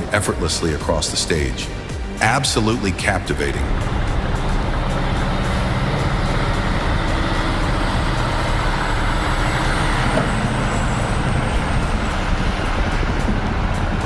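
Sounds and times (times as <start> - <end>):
truck diesel engine running: 1.4 - 14.0
road and drivetrain noise: 1.5 - 14.0
faint high whine: 2.8 - 14.0.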